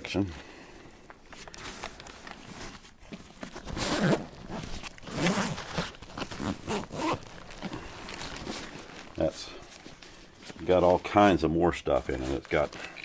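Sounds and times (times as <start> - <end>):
zipper being pulled open: 3.6 - 7.8.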